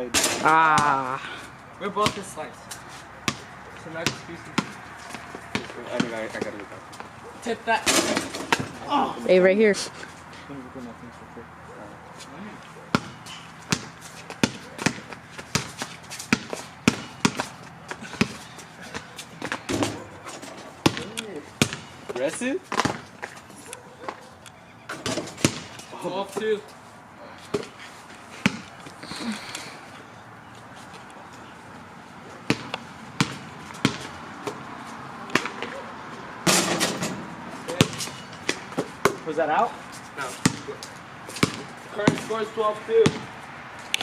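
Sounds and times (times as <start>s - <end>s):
basketball bouncing: 0.2s - 1.0s, 2.0s - 2.3s, 3.2s - 7.1s, 7.8s - 8.8s, 12.7s - 25.9s, 28.4s - 28.7s, 32.4s - 34.6s, 35.3s - 35.8s, 36.4s - 39.2s, 40.3s - 43.4s.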